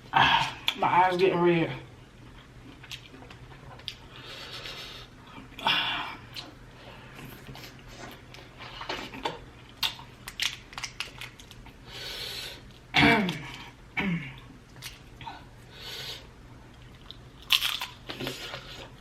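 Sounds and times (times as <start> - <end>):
chewing with wet clicks: 2.2 - 4.1, 9.2 - 11.8, 16.7 - 18.6.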